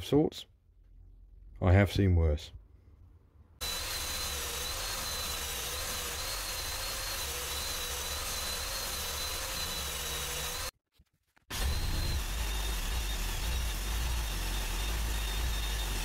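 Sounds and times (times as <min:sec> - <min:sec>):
power tool motor whining: 0:03.6 - 0:10.7, 0:11.5 - 0:16.0.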